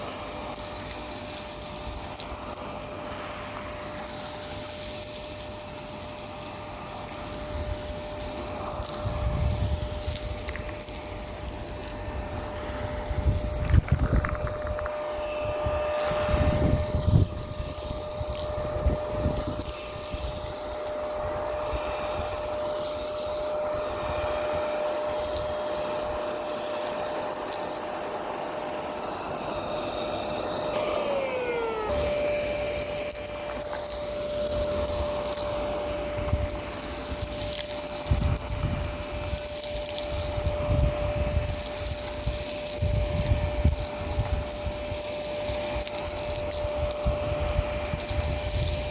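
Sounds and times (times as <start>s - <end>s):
grit crackling in vacuum: 0.0s - 48.9s
vacuum motor whine: 0.0s - 48.9s.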